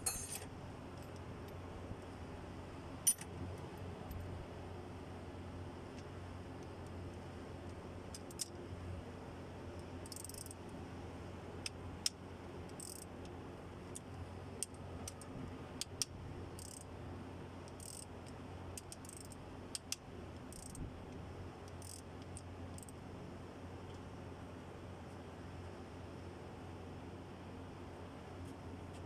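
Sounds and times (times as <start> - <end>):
metal tools clinking: 0.0 - 0.4, 3.1 - 3.3
steady low hum: 0.0 - 29.0.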